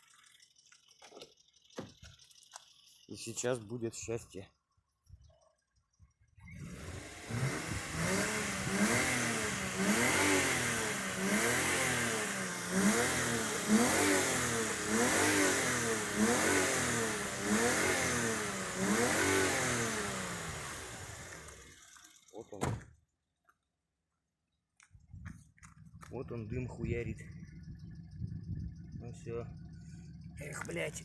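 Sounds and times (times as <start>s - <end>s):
car engine revving: 6.5s - 21.7s.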